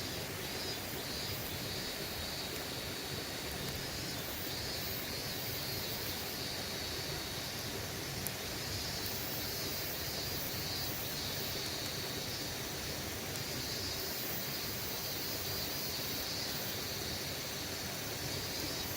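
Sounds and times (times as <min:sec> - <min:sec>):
cicadas buzzing: 0:00.0 - 0:18.9
faint ticks: 0:03.6 - 0:04.2, 0:08.2 - 0:09.7, 0:10.7 - 0:12.5, 0:13.2 - 0:14.0.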